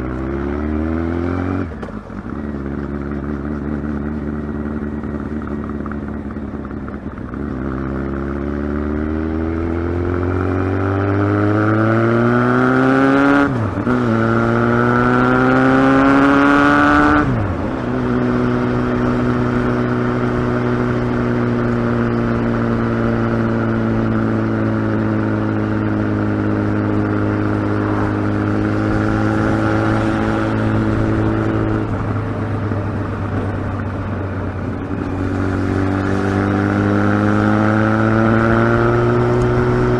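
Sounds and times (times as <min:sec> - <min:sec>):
motorcycle engine revving: 0:00.0 - 0:39.9
gear upshifts: 0:26.7 - 0:33.6.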